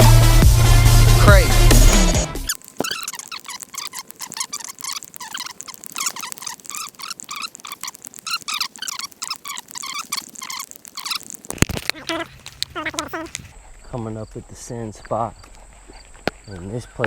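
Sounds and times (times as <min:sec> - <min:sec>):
small animals chirping: 0:01.7 - 0:14.0.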